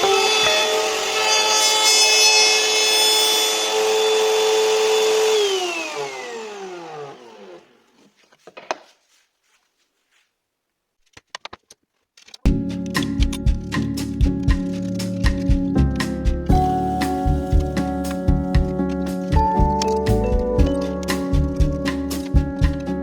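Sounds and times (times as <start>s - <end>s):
power tool whining on wood: 0.0s - 8.0s.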